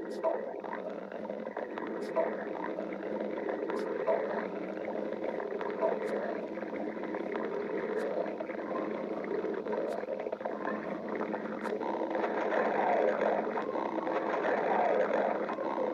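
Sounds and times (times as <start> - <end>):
stomach growling: 0.0 - 15.9.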